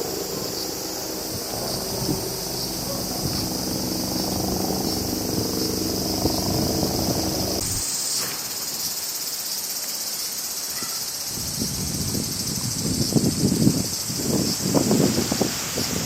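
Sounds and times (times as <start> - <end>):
low engine hum: 0.0 - 7.8
crickets chirping: 0.0 - 16.0.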